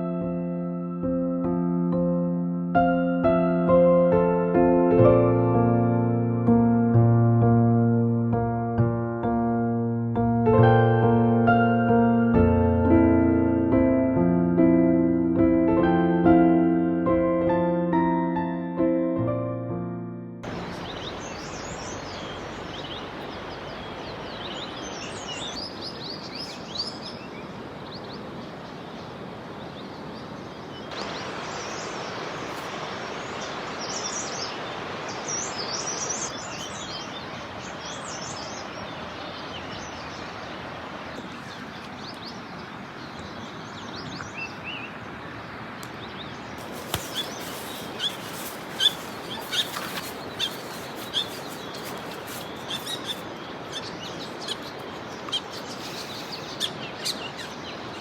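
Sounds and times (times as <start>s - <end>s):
steady background hiss: 20.5s - 43.9s, 46.6s - 58.0s
birds chirping and calling: 46.6s - 58.0s.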